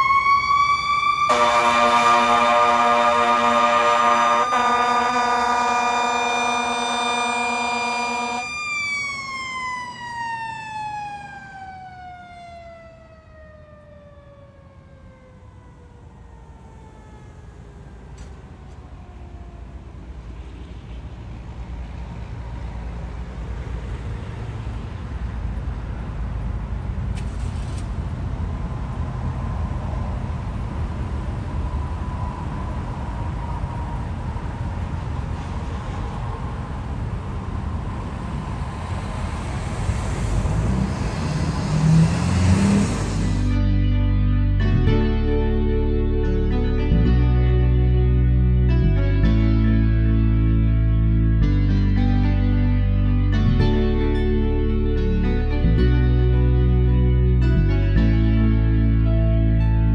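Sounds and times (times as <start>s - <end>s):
mechanical siren winding down: 0.0s - 19.5s, 38.2s - 43.6s
steady low rumble: 36.3s - 59.9s.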